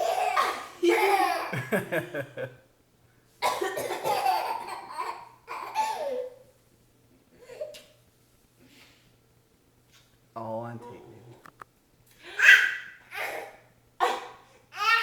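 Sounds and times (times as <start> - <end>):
woman coughing: 0.0 - 0.8, 3.4 - 4.2, 14.0 - 14.4
baby laughing: 3.9 - 6.4.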